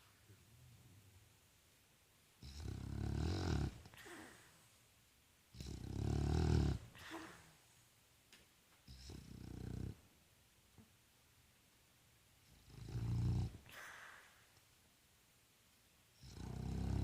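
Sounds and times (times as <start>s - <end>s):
dog snoring: 2.4s - 4.3s, 5.5s - 7.4s, 8.9s - 10.0s, 12.5s - 14.0s, 16.2s - 17.0s.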